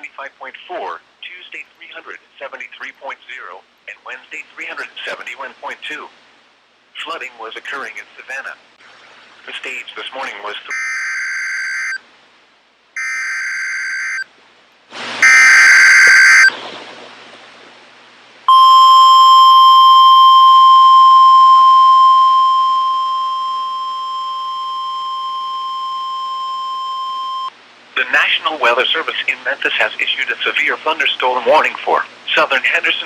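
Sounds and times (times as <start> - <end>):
harsh warbling data bursts: 10.7 - 12.0, 13.0 - 14.2, 15.2 - 16.5
steady high alarm tone: 10.7 - 12.0, 13.0 - 14.2, 15.2 - 16.5, 18.5 - 27.5.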